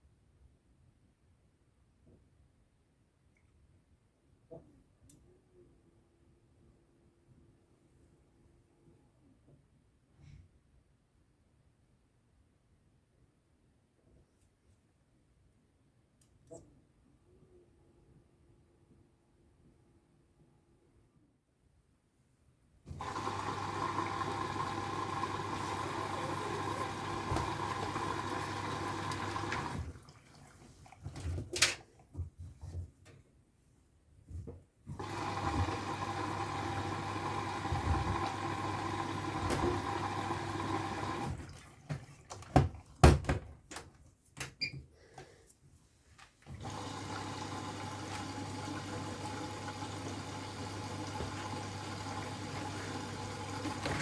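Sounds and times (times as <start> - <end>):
washing machine water rushing: 22.9 - 31.4, 34.9 - 43.2, 46.5 - 54.0.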